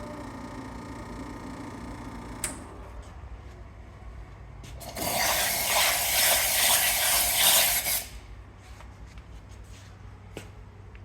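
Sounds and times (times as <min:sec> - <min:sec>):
espresso machine steam hiss: 0:04.9 - 0:08.2.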